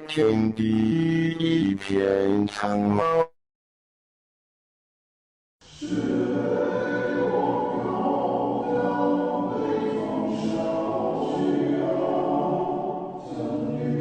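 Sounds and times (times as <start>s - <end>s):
music: 0.0s - 3.3s, 5.6s - 14.0s
choir singing held notes: 5.7s - 14.0s.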